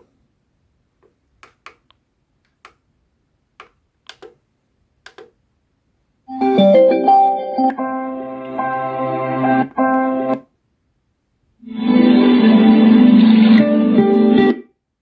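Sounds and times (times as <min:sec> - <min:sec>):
clock radio button clicks: 0:03.6 - 0:04.4, 0:05.1 - 0:05.4.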